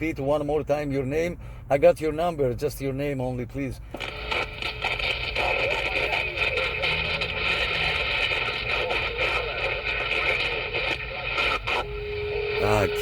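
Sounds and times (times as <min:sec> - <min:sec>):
radio static rush: 0:03.9 - 0:13.0
garbled radio voice: 0:04.3 - 0:13.0.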